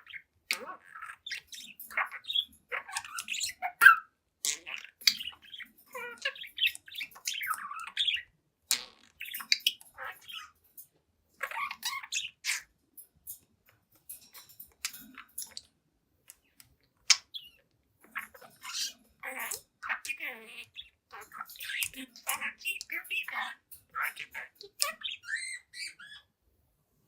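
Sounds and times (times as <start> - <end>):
budgerigar chattering: 0.0 - 8.3, 17.1 - 26.3.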